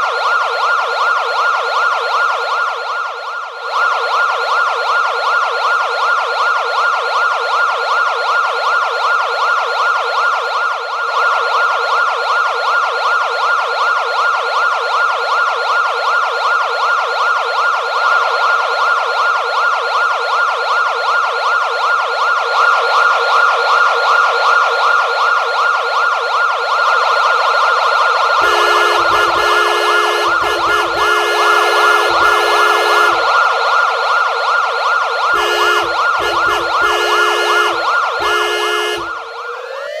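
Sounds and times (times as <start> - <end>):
police siren yelping: 0.0 - 40.0
steady tone blasts: 35.3 - 39.2.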